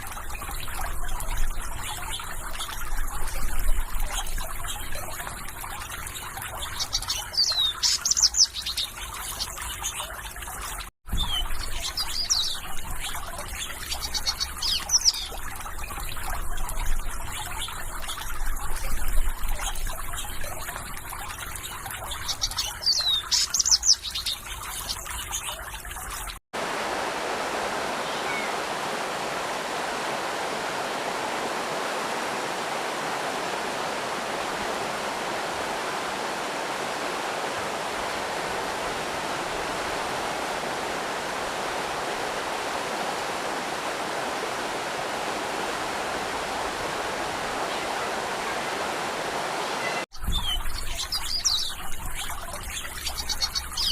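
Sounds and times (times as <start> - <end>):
small birds chirping: 0.0 - 26.2, 27.9 - 28.7, 47.3 - 53.9
trickling water: 0.0 - 53.9
stream rushing: 26.6 - 50.1.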